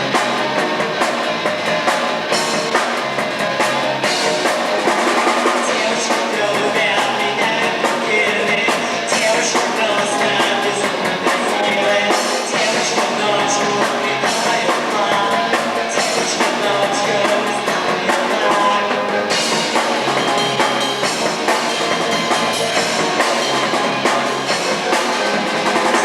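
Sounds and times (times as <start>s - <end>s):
drum kit: 0.0s - 26.0s
rock band playing live: 0.0s - 26.0s.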